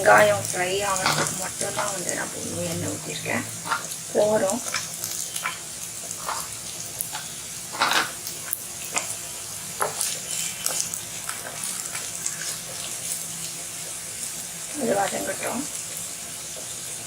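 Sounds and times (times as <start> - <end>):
onion sizzling in a pan: 0.0 - 17.0
spatula scraping a pan: 2.6 - 4.0, 4.7 - 8.2, 9.8 - 11.6.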